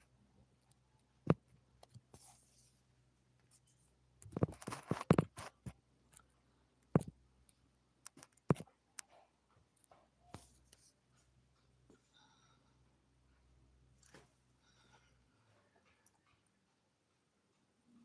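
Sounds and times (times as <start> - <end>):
handling knocks and scrapes: 3.6 - 5.8.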